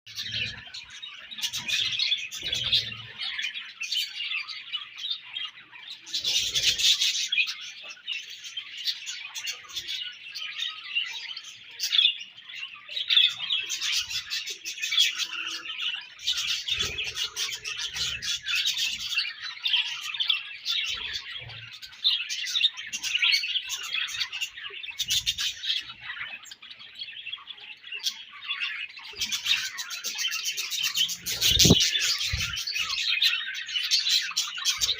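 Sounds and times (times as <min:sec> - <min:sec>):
budgerigars chirping and chattering: 0:00.1 - 0:34.9
bird squawks: 0:28.0 - 0:34.9.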